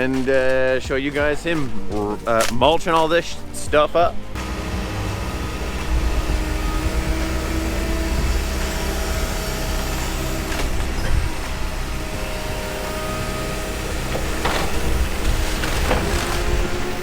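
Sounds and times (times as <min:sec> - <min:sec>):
excavator diesel engine running: 0:04.4 - 0:17.0
wood cracking as crushed: 0:04.4 - 0:17.0.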